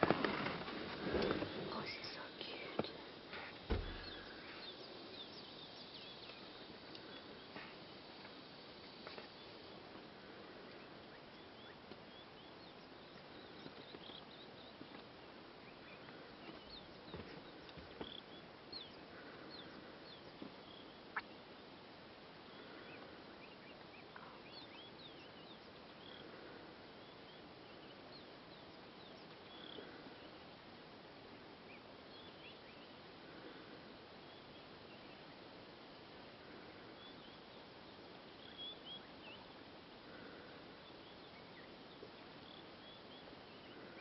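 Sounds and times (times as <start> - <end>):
soft rustles: 0.0 - 4.7.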